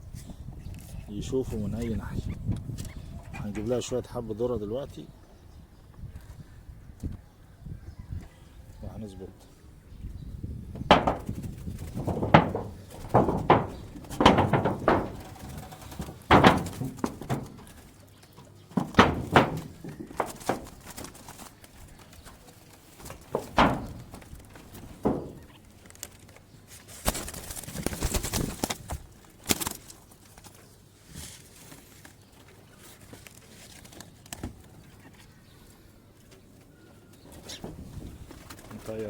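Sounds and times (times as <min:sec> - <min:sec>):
knocks and thuds of trap: 0:10.8 - 0:21.2, 0:23.0 - 0:25.5.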